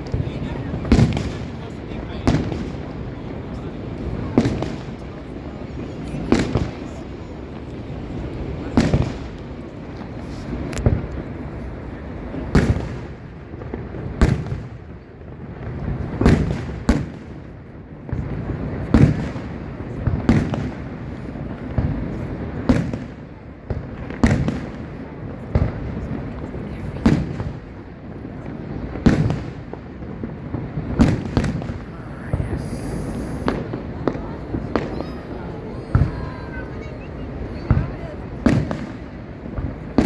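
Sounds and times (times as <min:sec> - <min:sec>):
firework shells booming: 0:00.0 - 0:03.1, 0:28.7 - 0:40.0.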